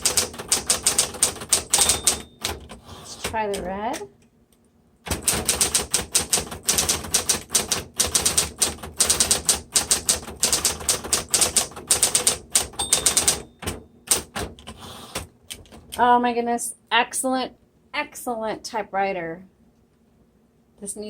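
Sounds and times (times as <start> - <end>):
typewriter keystrikes: 0.0 - 2.8, 5.1 - 15.9
typewriter motor hum: 5.1 - 13.4, 14.1 - 15.8.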